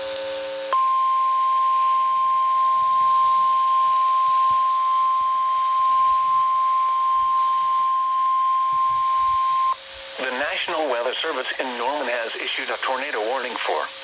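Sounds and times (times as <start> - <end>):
steady warning alarm tone: 0.4 - 9.8.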